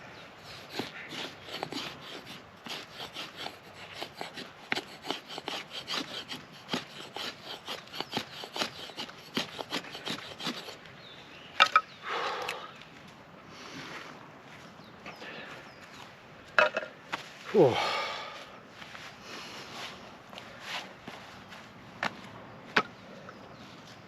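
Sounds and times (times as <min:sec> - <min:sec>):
knife shaving wooden stick: 0:00.4 - 0:10.8.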